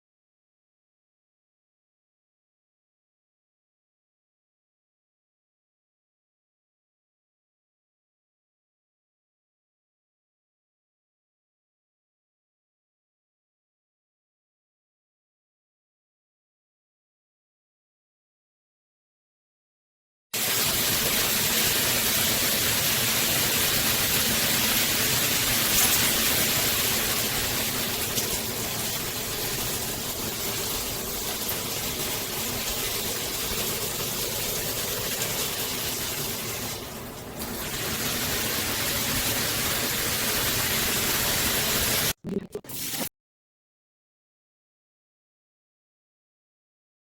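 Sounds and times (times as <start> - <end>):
shower water spraying: 20.4 - 43.1.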